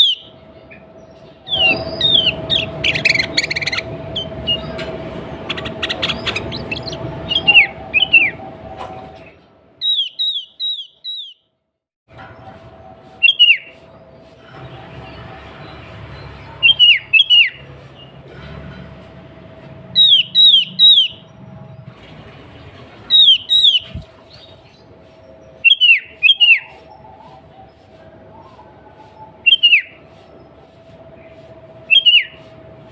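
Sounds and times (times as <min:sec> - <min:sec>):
bird whistled calls: 0:00.0 - 0:00.8, 0:01.5 - 0:04.9, 0:05.5 - 0:11.4, 0:13.2 - 0:13.8, 0:16.6 - 0:17.7, 0:20.0 - 0:21.3, 0:23.1 - 0:30.2, 0:31.9 - 0:32.6.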